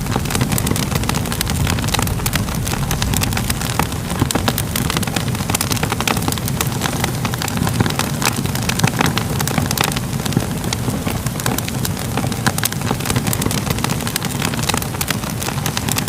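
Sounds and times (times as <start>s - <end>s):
low rumble: 0.0s - 7.8s
fire crackling: 0.0s - 16.0s.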